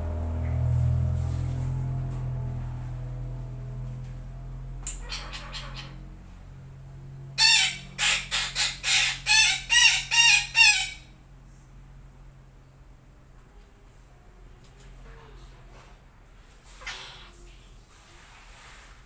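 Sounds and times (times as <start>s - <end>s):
parakeet harsh screeching calls: 5.0s - 6.0s, 7.4s - 11.1s, 16.8s - 17.3s.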